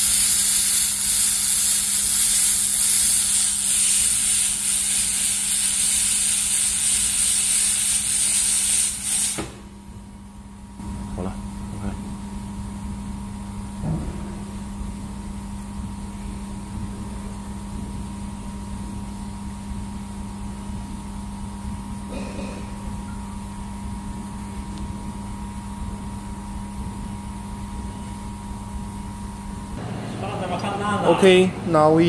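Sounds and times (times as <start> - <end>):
welding machine electrical hum: 0.0 - 32.0.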